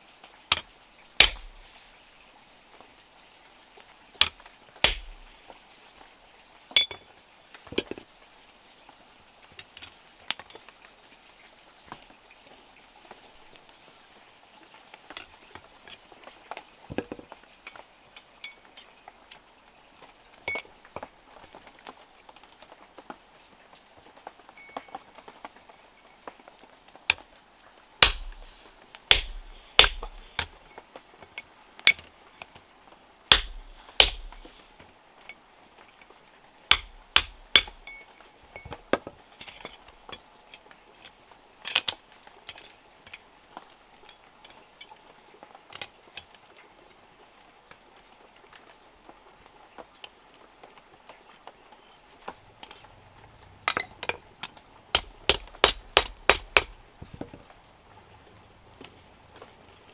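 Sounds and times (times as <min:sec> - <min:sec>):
hammer on metal: 0:01.2 - 0:01.6, 0:04.8 - 0:05.5, 0:28.0 - 0:30.5, 0:33.3 - 0:34.6, 0:36.7 - 0:37.9, 0:55.0 - 0:56.8.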